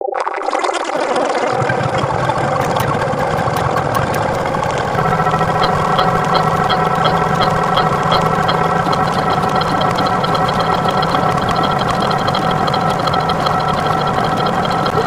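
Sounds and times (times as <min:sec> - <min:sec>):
mechanical engine running: 0:01.5 - 0:15.0
light regular ticking: 0:02.4 - 0:15.0.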